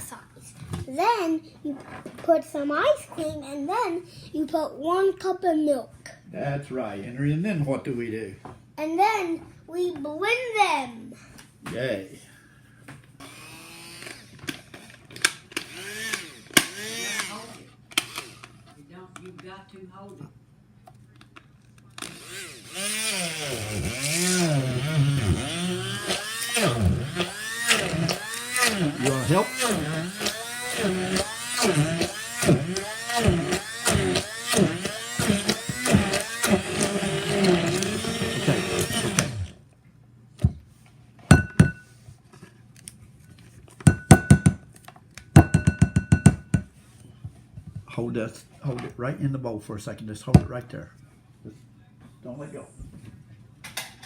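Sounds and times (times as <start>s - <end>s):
electric blender motor: 13.2s - 18.6s, 22.0s - 39.6s
hard object knocking on a bowl: 41.3s - 41.8s, 43.8s - 44.6s, 45.4s - 46.7s.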